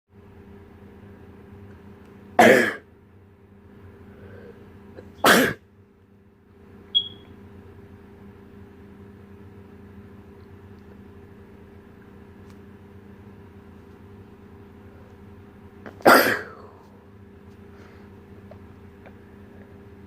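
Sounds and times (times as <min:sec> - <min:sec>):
steady background hum: 0:00.2 - 0:20.0
person sneezing: 0:02.4 - 0:02.8, 0:05.0 - 0:05.6, 0:15.9 - 0:16.8.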